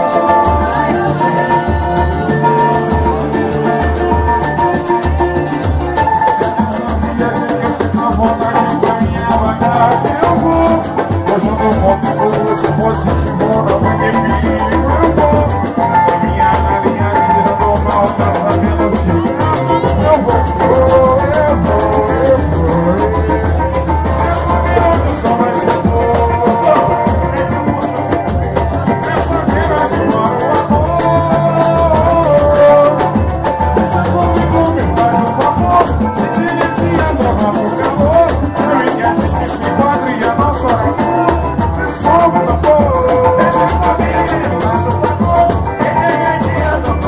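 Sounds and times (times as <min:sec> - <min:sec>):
drums and shakers: 0:00.0 - 0:47.0
melody line: 0:00.0 - 0:47.0.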